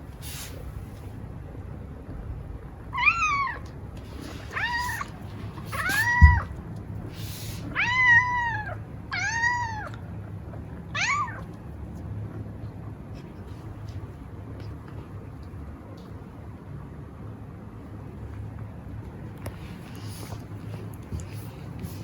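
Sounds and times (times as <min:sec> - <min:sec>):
steady low hum: 0:00.0 - 0:22.0
cat meowing: 0:02.9 - 0:03.7, 0:04.5 - 0:05.1, 0:05.7 - 0:06.5, 0:07.7 - 0:09.9, 0:10.9 - 0:11.5.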